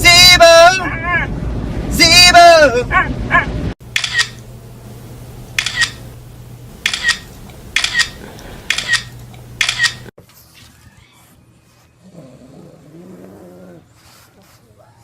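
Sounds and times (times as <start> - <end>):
low steady hum: 0.5 - 10.1
sharp double clicks: 3.9 - 4.4, 5.6 - 6.0, 6.8 - 10.1.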